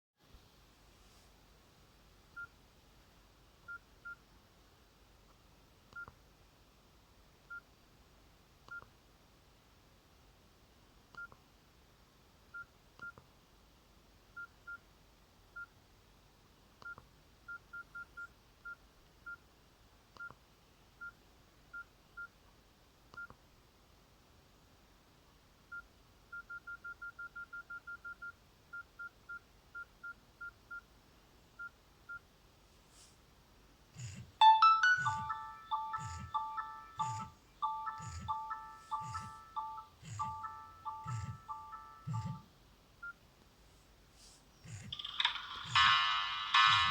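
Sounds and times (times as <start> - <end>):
phone keypad beeps: 34.0 - 42.4.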